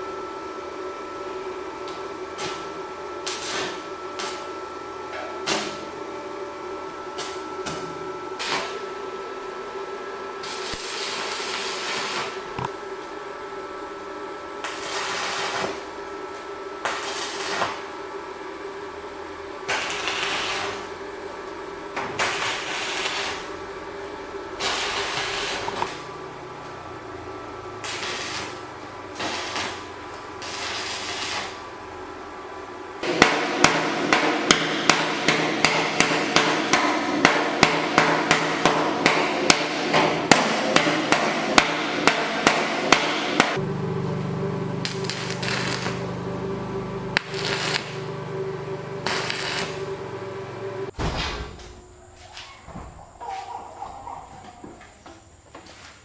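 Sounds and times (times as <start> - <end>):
steady hum: 0.0 - 52.2
short noisy strokes: 47.1 - 50.9.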